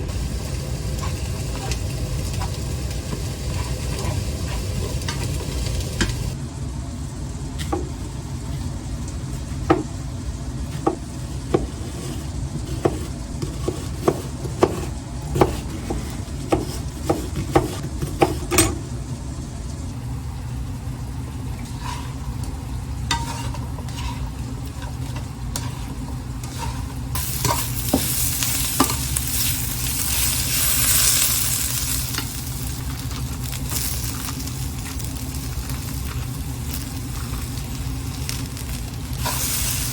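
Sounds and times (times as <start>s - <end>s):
food sizzling: 0.0s - 6.4s, 19.5s - 39.9s
steady low rumble: 0.0s - 7.5s.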